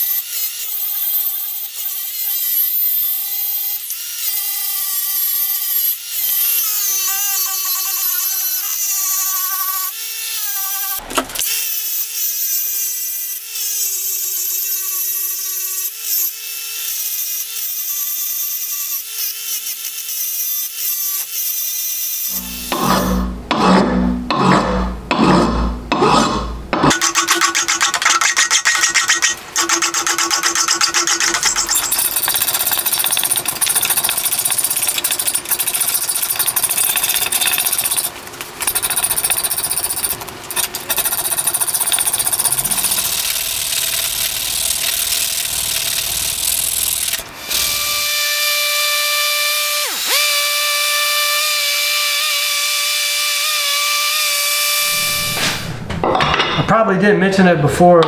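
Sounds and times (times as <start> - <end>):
power tool grinding steel: 0.0 - 55.4
steady high whine: 22.3 - 26.9.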